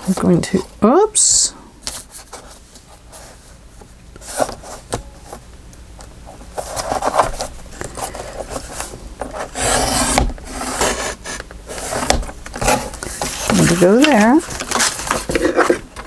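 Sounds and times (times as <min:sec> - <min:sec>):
paper rustling and scraping: 0:06.5 - 0:16.0.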